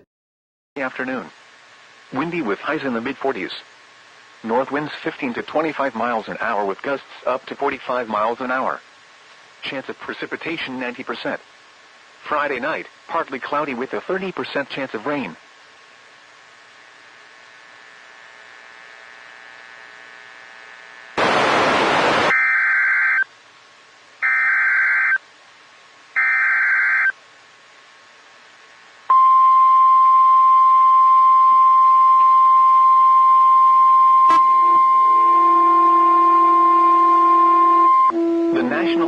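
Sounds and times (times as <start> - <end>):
radio static burst: 21.2 - 22.4
lower alarm tone: 22.2 - 23.2, 24.2 - 25.2, 26.2 - 27.1, 29.1 - 39.0
steady warning alarm tone: 22.3 - 23.2, 24.2 - 25.2, 26.2 - 27.2, 29.1 - 39.0
warbling data tones: 26.2 - 27.1, 30.6 - 38.8.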